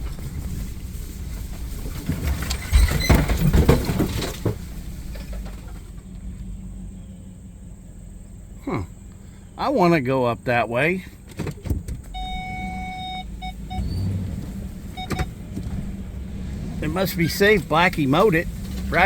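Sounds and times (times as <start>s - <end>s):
knocks and rattles: 0.0s - 6.2s
vehicle engine and road noise: 0.0s - 19.0s.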